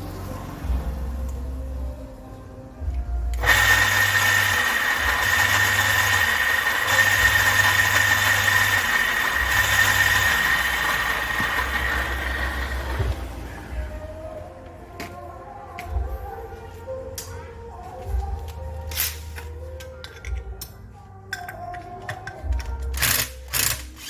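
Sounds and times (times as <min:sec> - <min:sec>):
water pump motor whining: 0:03.3 - 0:14.0.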